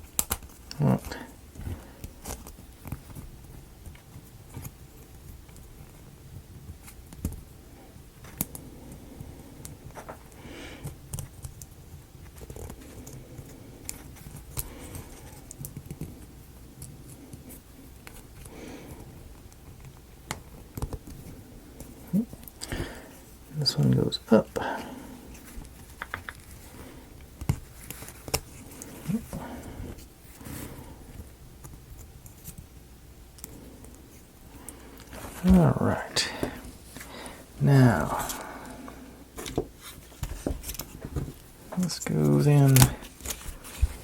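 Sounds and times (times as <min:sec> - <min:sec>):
wooden pieces clicking and tapping: 0:08.2 - 0:23.0, 0:25.4 - 0:29.4.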